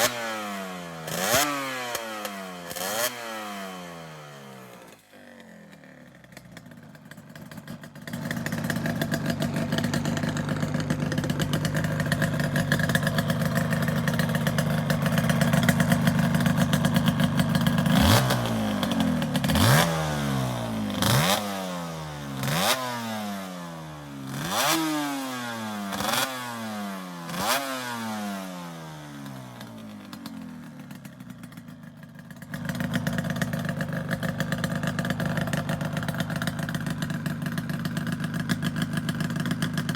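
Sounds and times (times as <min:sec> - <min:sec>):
motorcycle engine revving: 0:00.0 - 0:39.9
exhaust cracks: 0:05.0 - 0:22.8, 0:32.4 - 0:39.9.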